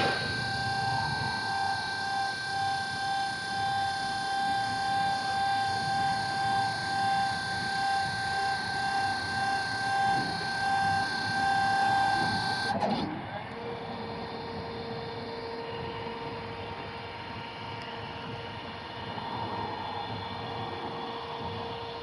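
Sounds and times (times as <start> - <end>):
electric motor high whine: 0.0 - 22.0.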